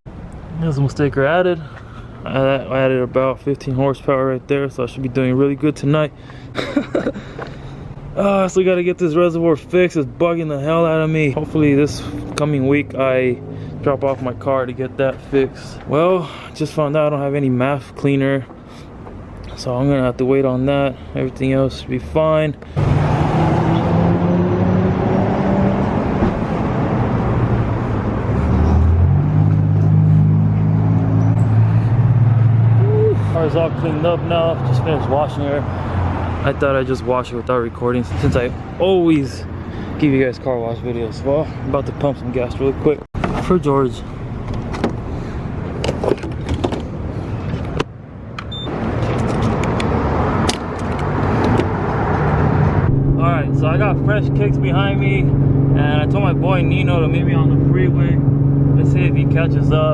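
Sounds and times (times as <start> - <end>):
road or wind noise: 0.1 - 59.9
car engine droning: 22.6 - 38.5, 48.6 - 59.9
short electronic beep: 48.5 - 48.7.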